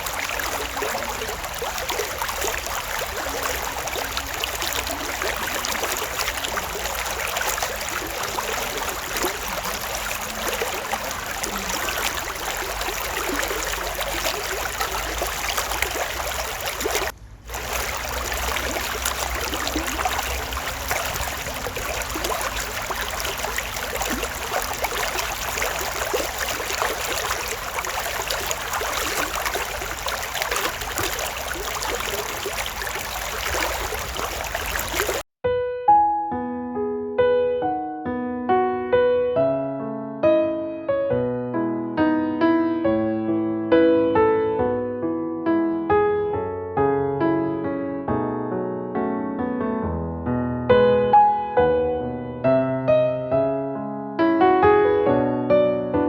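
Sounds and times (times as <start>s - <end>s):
creek water splashing over stones: 0.0s - 35.3s.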